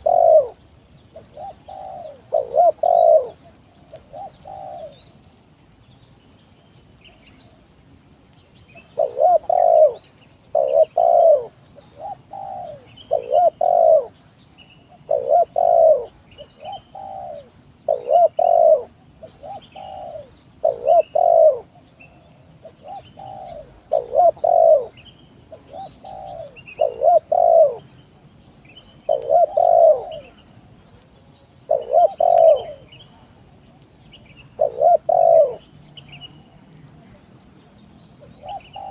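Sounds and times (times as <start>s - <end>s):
dove cooing: 0.0s - 5.1s, 8.8s - 14.2s, 14.9s - 28.4s, 29.0s - 30.4s, 31.6s - 33.0s, 34.5s - 35.7s, 38.2s - 38.9s
small birds chirping: 0.0s - 7.7s, 8.3s - 38.9s.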